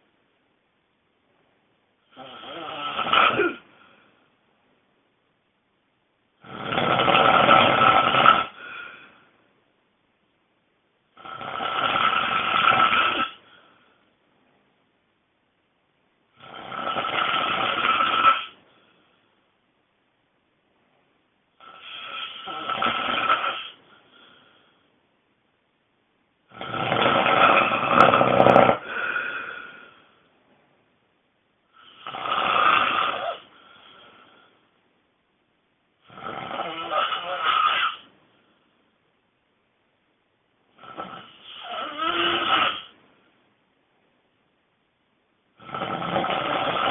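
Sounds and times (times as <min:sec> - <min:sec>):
loud snoring: 0:02.1 - 0:03.6, 0:06.4 - 0:09.1, 0:11.2 - 0:13.6, 0:16.4 - 0:18.6, 0:21.6 - 0:23.8, 0:26.5 - 0:30.0, 0:31.8 - 0:34.4, 0:36.0 - 0:38.1, 0:40.8 - 0:43.0, 0:45.6 - 0:46.9.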